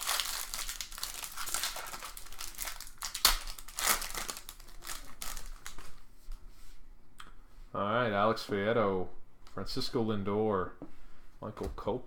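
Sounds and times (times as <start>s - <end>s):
plastic wrappers crinkling and tearing: 0.0s - 6.0s.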